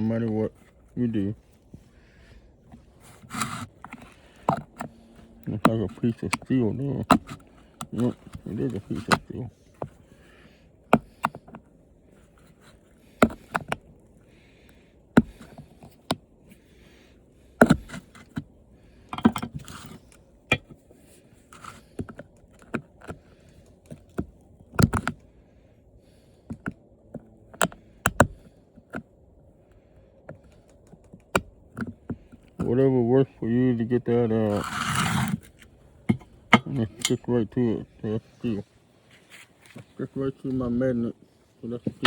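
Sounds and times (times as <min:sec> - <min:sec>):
plastic and metal parts clicking and scraping: 0:01.6 - 0:16.9, 0:17.6 - 0:25.3, 0:26.3 - 0:32.8, 0:34.4 - 0:37.3.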